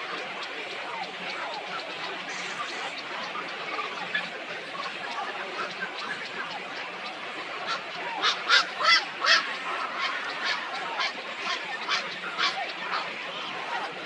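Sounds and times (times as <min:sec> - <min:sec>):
flock of birds calling: 0:00.0 - 0:14.0.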